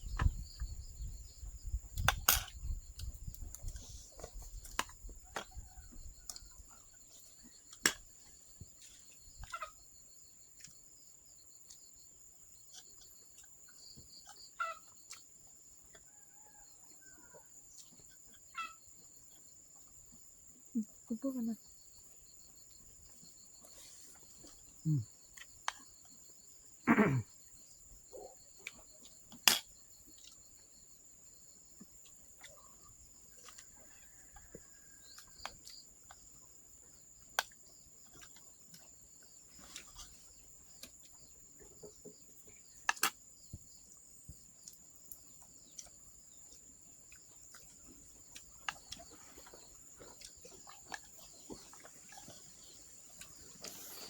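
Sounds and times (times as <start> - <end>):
insects chirring: 0.0 - 54.0.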